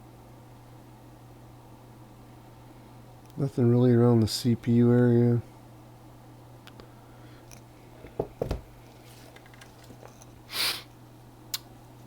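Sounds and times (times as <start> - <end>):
steady low hum: 0.0 - 12.0
soft knocks: 8.1 - 8.7
short hiss: 10.5 - 10.9.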